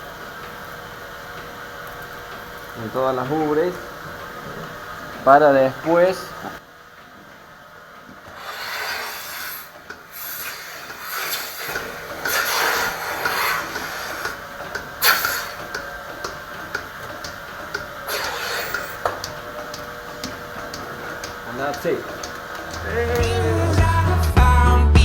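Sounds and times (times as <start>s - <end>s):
brief hissing of milk: 8.4s - 14.3s
hands rubbing cow udder: 10.2s - 23.4s.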